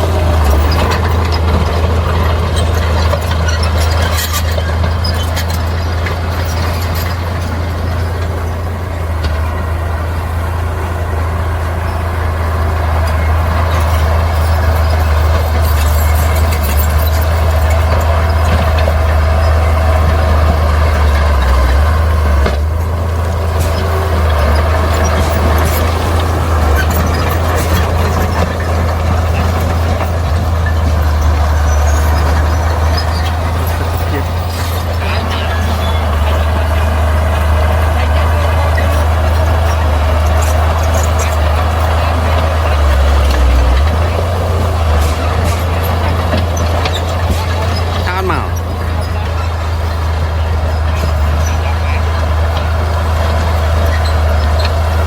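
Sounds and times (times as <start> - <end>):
diesel engine rumbling: 0.0 - 55.0
sharp knocks and clanks: 13.0 - 55.0.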